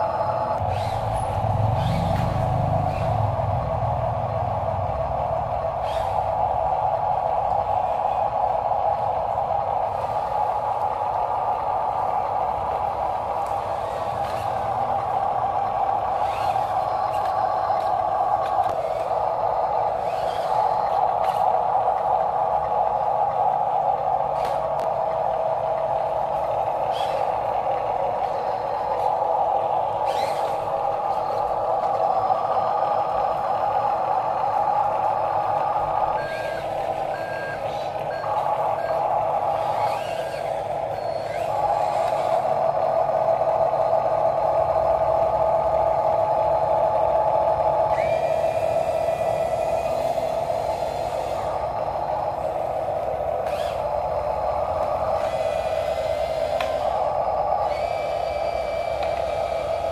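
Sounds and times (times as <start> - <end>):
toy gear motors whining: 0.0 - 3.7, 4.9 - 59.9
electronic reversing beeper: 36.1 - 42.4.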